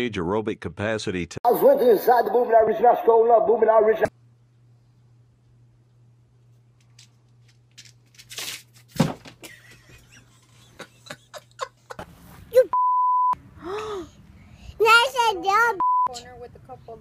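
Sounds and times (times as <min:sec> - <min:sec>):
low steady hum: 0:01.5 - 0:08.3
censor bleep: 0:12.7 - 0:13.4, 0:15.8 - 0:16.1.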